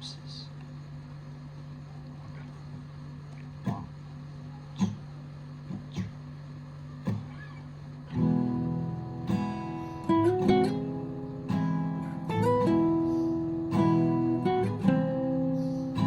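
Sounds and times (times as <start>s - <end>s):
steady low hum: 0.0s - 16.0s
acoustic guitar strumming: 3.6s - 3.9s, 4.7s - 5.1s, 5.7s - 6.2s, 7.0s - 16.0s.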